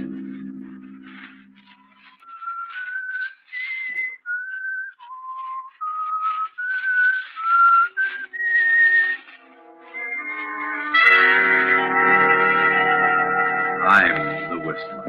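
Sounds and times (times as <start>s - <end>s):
faint low instrumental notes: 0.0s - 2.2s, 9.2s - 15.0s
person whistling a slow melody: 0.0s - 11.4s.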